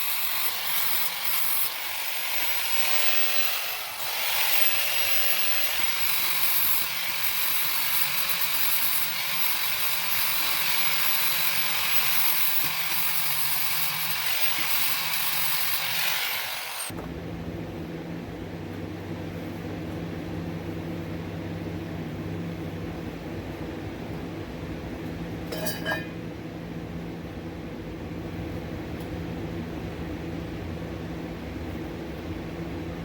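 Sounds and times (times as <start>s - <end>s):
welder arc crackling and sizzling: 0.0s - 16.9s
steady hum: 16.9s - 28.8s.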